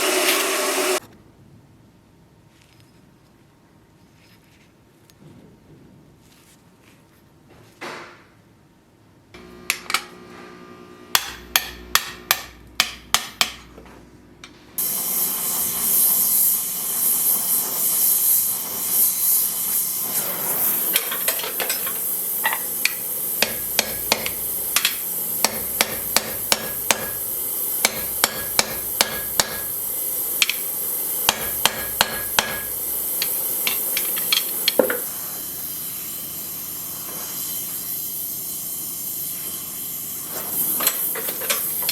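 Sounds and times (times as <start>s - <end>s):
loud steady hiss: 14.8s - 41.9s.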